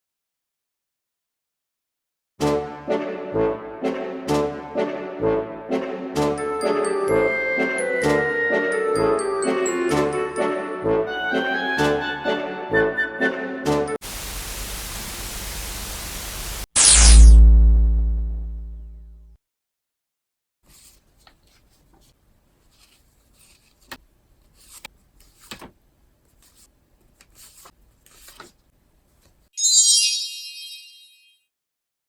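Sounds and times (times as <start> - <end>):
steady hiss: 14.0 - 16.7
bright chime: 29.6 - 31.4.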